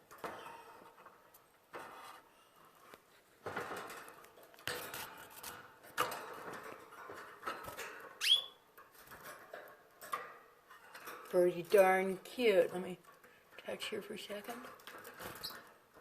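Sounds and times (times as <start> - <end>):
canary chirp: 8.2 - 8.6.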